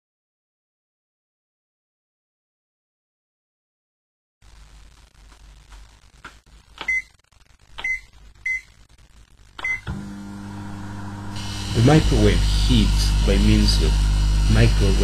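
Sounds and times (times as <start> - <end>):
keypad clicks: 7.8 - 8.0
microwave oven humming: 9.6 - 15.0.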